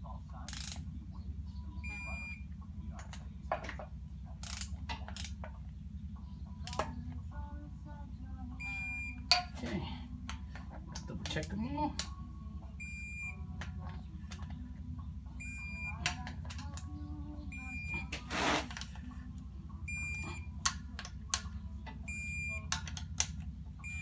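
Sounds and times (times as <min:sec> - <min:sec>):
steady low hum: 0:00.0 - 0:24.0
tool clicks: 0:03.0 - 0:05.6, 0:06.6 - 0:07.2, 0:09.2 - 0:09.6, 0:15.7 - 0:17.0, 0:20.1 - 0:23.5.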